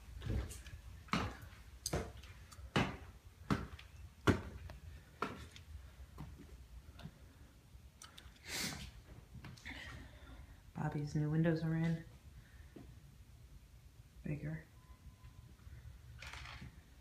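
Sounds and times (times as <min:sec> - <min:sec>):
footsteps climbing stairs: 0:00.0 - 0:07.2.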